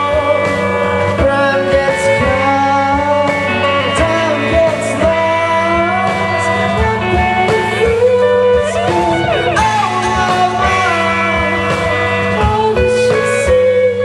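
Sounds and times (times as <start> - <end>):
bass: 0.0 - 14.0
electric guitar lead: 0.0 - 14.0
steady drum beat: 0.0 - 14.0.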